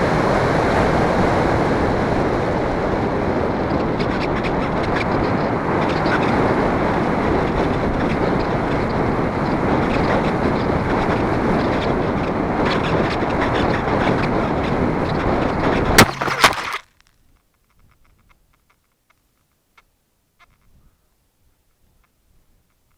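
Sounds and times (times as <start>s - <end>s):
wind and propeller noise: 0.0s - 16.8s.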